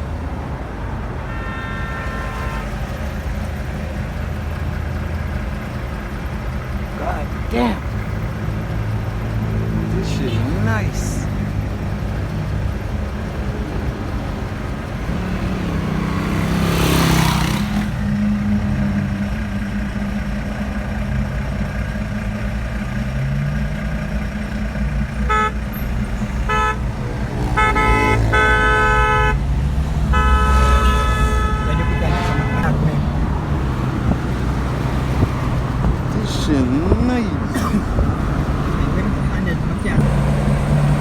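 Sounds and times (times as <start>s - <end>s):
car road and engine rumble: 0.0s - 41.0s
car horn honking: 0.8s - 3.4s, 9.9s - 18.0s, 25.0s - 33.2s.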